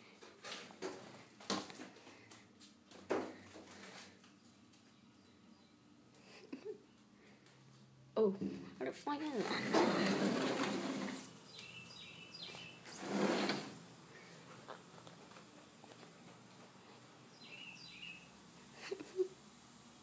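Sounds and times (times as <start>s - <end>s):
small bird chirping: 11.4s - 13.0s, 17.3s - 18.3s.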